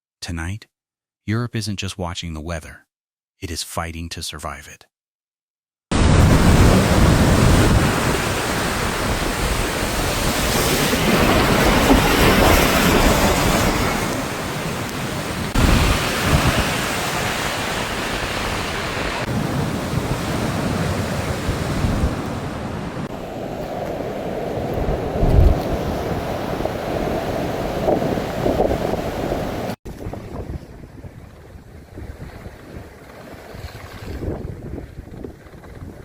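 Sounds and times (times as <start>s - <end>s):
surging water: 5.9s - 29.8s
wind: 5.9s - 36.0s
wind buffeting microphone: 19.2s - 36.0s.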